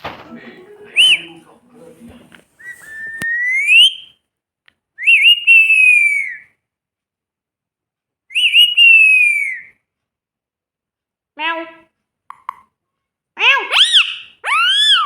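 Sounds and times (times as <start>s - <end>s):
parrot whistling: 0.9s - 1.4s, 2.6s - 4.2s, 5.0s - 6.5s, 8.3s - 9.8s, 13.7s - 15.0s.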